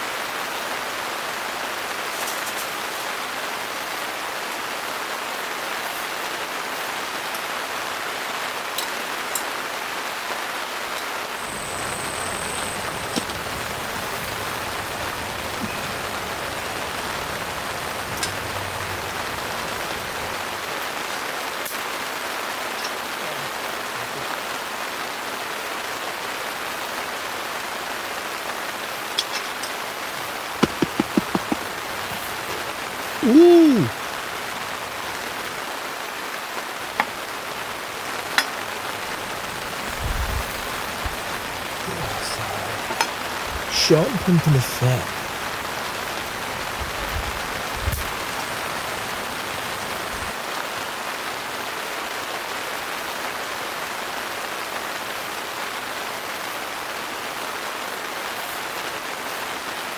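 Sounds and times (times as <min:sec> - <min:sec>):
heavy rain on a tent: 0:00.0 - 0:59.9.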